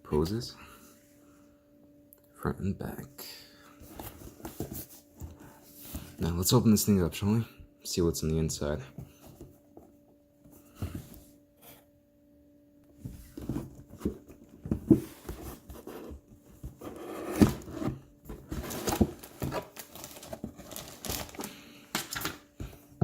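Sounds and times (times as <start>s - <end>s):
cardboard and plastic crinkling: 3.8s - 6.2s, 13.1s - 23.0s
knocks and scrapes on cardboard box: 13.0s - 21.3s.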